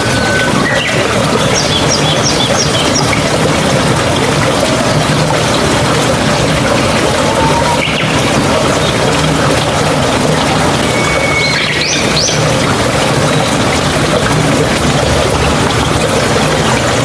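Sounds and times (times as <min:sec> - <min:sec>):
birds chirping: 0:00.0 - 0:03.6, 0:06.6 - 0:09.6, 0:10.7 - 0:13.7
water rushing: 0:00.0 - 0:17.0
bird whistled note: 0:10.9 - 0:12.0.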